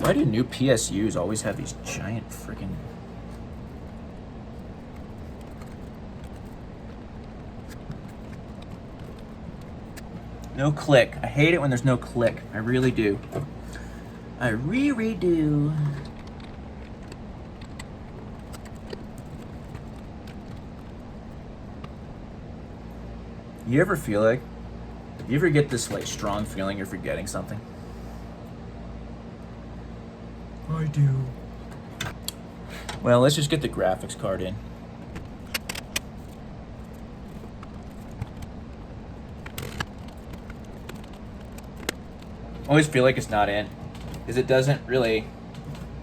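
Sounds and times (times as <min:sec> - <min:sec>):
scraping rustle: 0:00.0 - 0:10.5
low background hum: 0:00.0 - 0:46.0.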